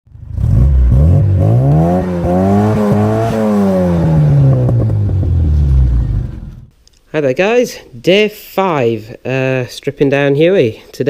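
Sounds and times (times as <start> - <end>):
car engine revving: 0.1 - 6.7.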